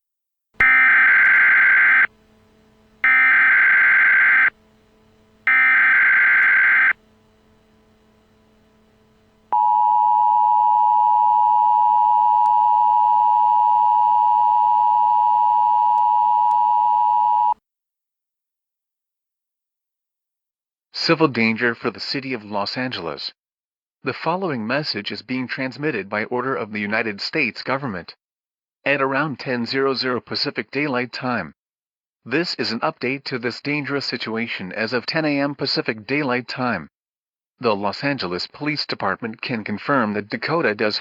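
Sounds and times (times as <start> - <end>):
digital header bursts: 0.6 - 2.1, 3.0 - 4.5, 5.5 - 7.0
two-tone attention signal: 0.6 - 2.1, 3.0 - 4.5, 5.5 - 7.0.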